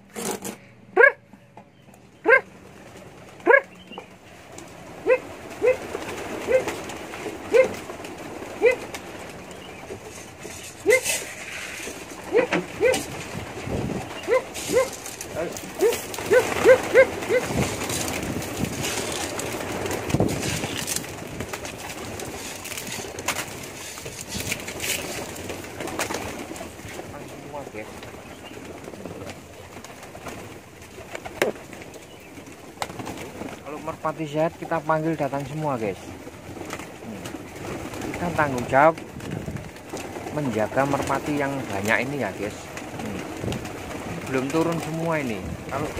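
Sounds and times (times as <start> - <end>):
pigeons cooing: 0.0 - 45.9
dog barking in sharp yaps: 1.0 - 1.2, 3.5 - 3.7.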